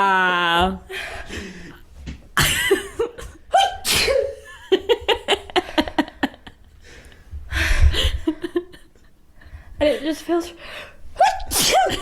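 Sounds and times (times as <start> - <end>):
person sneezing: 3.8 - 4.4, 11.2 - 12.0.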